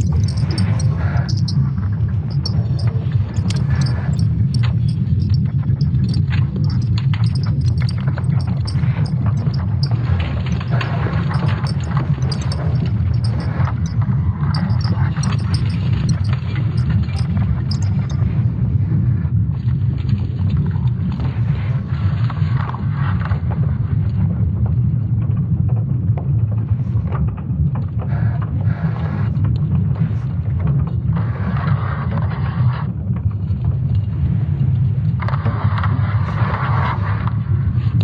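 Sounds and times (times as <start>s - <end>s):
deep steady rumble: 0.0s - 22.3s
eerie creaks and crackles: 0.0s - 24.7s, 25.3s - 38.0s.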